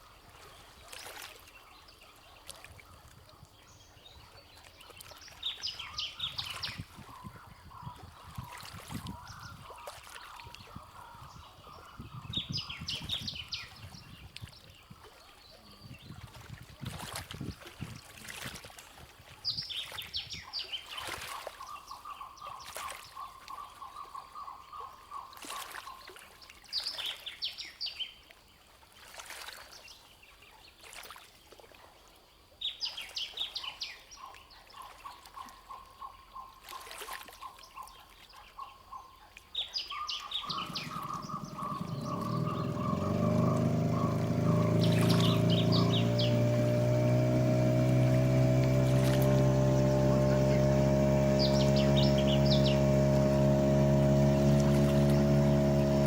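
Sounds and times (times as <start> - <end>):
songbird singing: 1.4 - 16.2, 37.5 - 56.0
low bird trill: 40.4 - 46.8
trickling water: 40.5 - 56.0.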